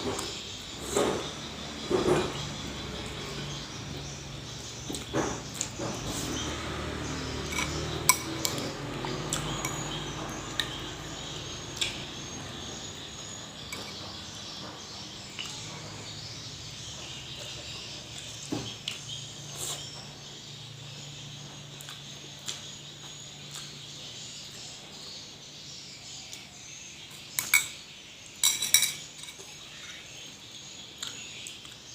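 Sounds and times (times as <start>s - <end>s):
utensils clinking on a plate: 7.4s - 10.8s, 13.7s - 14.1s, 27.4s - 27.8s, 28.4s - 29.7s.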